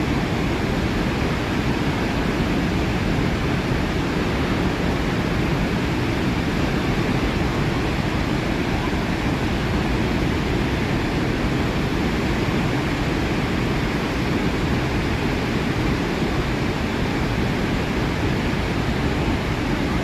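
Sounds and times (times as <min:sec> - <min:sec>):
rushing waterfall: 0:00.0 - 0:20.0.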